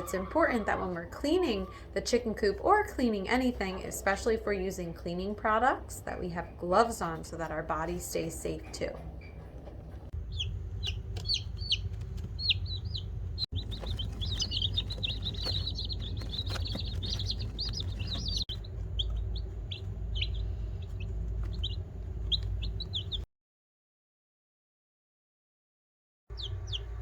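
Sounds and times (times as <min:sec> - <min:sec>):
steady low rumble: 0:01.0 - 0:23.3, 0:26.3 - 0:27.0
chickens chirping: 0:09.4 - 0:23.3, 0:26.3 - 0:27.0.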